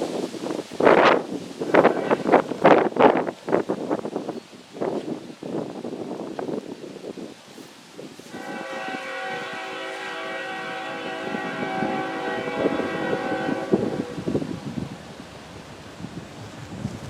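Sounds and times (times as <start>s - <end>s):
wind on microphone: 0.0s - 17.0s
train horn blast: 1.7s - 2.7s, 8.2s - 14.6s.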